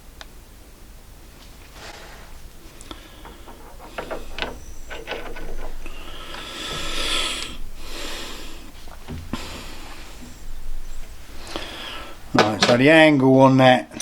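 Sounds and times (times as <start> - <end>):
scraping rub: 1.7 - 7.5
sharp clicks and knocks: 2.8 - 6.8.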